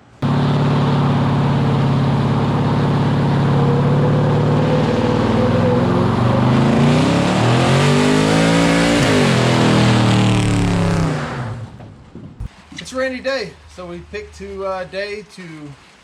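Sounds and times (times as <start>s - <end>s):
engine running and revving: 0.0s - 11.8s.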